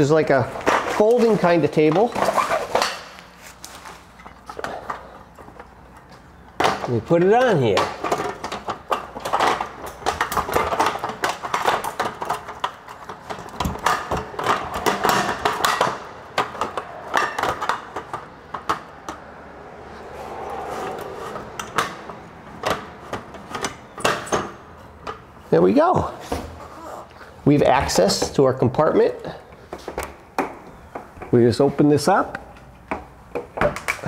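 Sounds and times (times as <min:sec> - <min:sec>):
folding table clicks and knocks: 0:06.5 - 0:19.4, 0:32.9 - 0:34.0.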